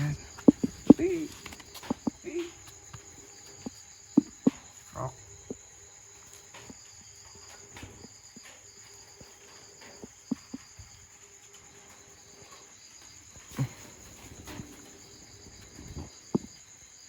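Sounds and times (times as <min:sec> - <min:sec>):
dull thump: 0:00.0 - 0:02.3, 0:04.2 - 0:04.6
sharp taps: 0:00.0 - 0:02.4, 0:03.5 - 0:04.7
insects trilling: 0:00.0 - 0:17.0.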